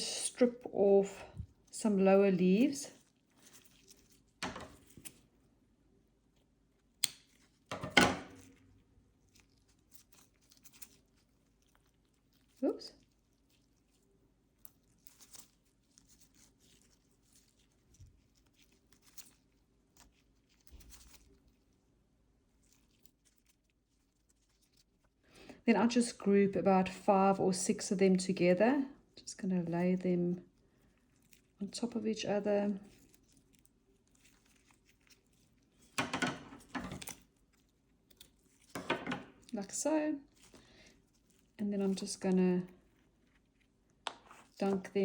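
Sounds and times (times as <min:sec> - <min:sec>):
leaves snapping and rustling: 0:06.9 - 0:07.6, 0:14.5 - 0:21.4, 0:36.6 - 0:38.8.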